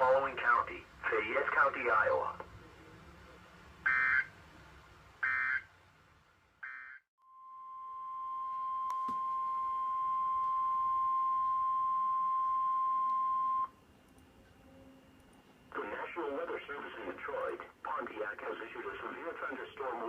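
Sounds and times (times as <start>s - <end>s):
steady warning alarm tone: 3.8s - 4.3s, 5.2s - 5.7s, 6.6s - 16.8s.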